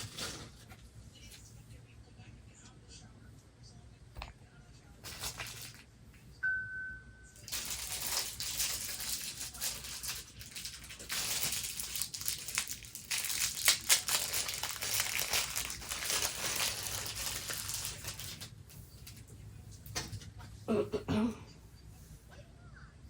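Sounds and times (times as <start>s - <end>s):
plastic wrapping crinkling: 5.0s - 5.9s, 7.4s - 19.2s.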